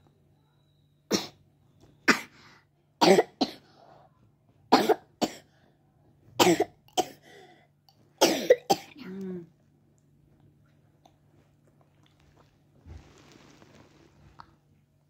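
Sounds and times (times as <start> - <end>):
child coughing: 3.0 - 3.6, 4.7 - 5.5, 6.4 - 7.2, 8.2 - 9.2.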